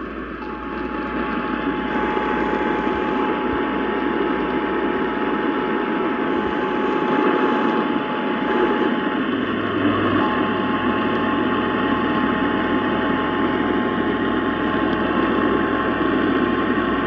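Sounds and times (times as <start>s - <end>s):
low hum: 0.0s - 17.0s
radio static hiss: 0.1s - 16.0s
faint constant whistle tone: 0.4s - 4.1s, 5.0s - 9.0s.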